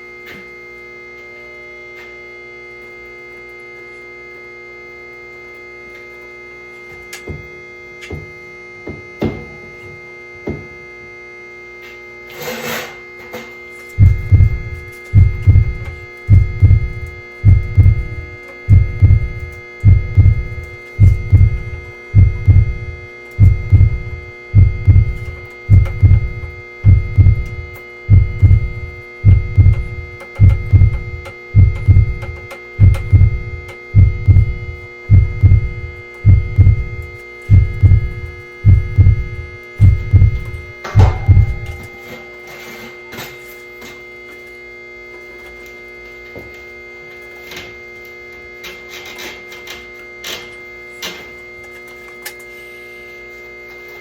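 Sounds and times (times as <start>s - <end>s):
sustained droning chord: 0.0s - 45.1s
heartbeat-like bass thump: 14.0s - 41.8s.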